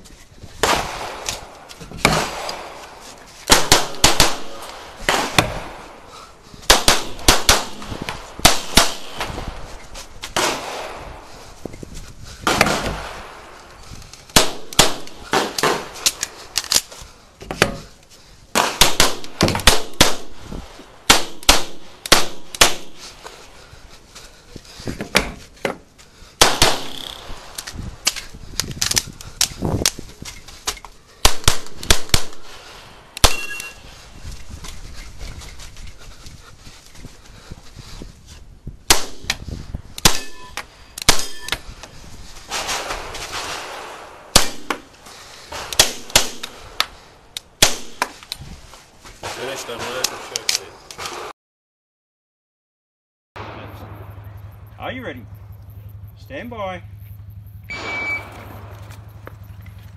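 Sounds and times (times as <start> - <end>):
pistol shots: 3.5 - 6.0, 6.7 - 9.4, 10.4 - 11.1, 14.3 - 16.1, 18.6 - 20.4, 21.0 - 23.0, 26.4 - 27.6, 31.2 - 32.5, 33.2 - 33.8, 40.0 - 41.5, 42.5 - 44.9, 45.5 - 46.6, 47.6 - 48.1.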